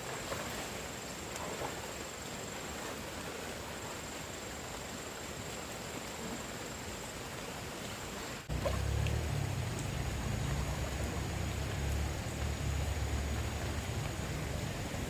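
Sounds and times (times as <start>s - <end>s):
flooded stream rushing: 0.0s - 15.0s
low rumble: 8.5s - 15.0s.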